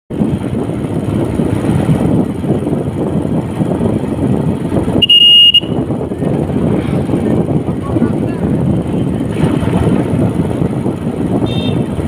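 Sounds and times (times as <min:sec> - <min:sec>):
wind and road noise: 0:00.1 - 0:12.0
loud high beep: 0:05.0 - 0:05.8.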